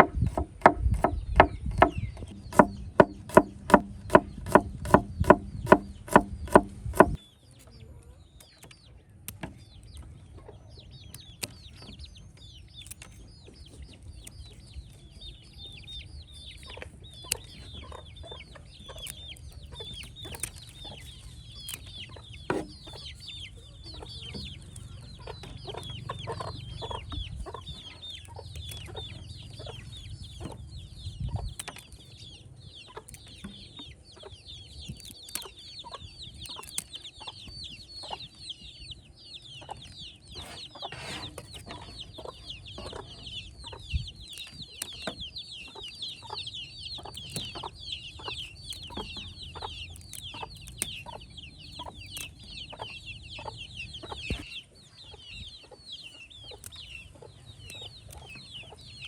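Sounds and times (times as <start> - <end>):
knocks and taps: 0.0 - 7.2
chickens chirping: 0.0 - 59.0.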